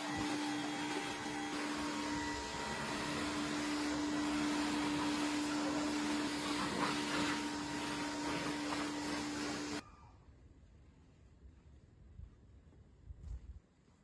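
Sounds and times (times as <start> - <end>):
cleaning machine motor drone: 0.0 - 9.8.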